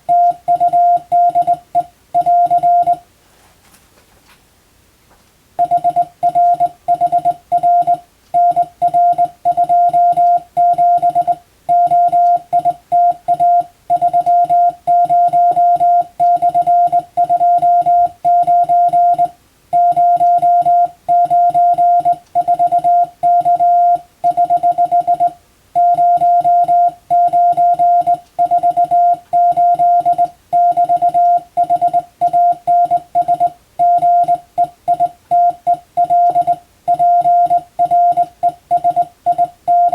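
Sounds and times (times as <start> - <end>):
morse code beeps: 0.0 - 3.0, 5.6 - 39.9.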